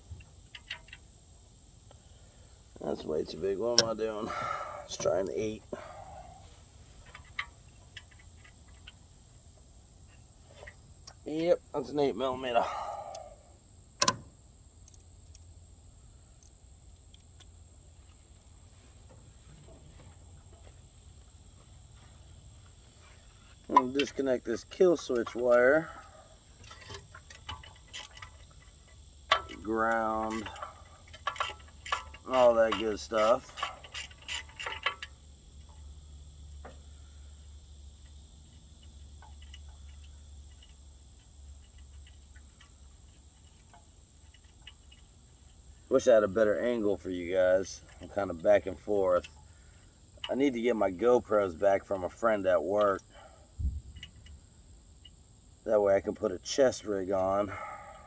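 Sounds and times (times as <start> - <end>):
hand tools clicking on engine: 2.9 - 9.1, 12.6 - 13.4, 14.0 - 15.4, 23.5 - 35.9, 38.0 - 53.3
tools clicking and clinking: 26.6 - 35.2.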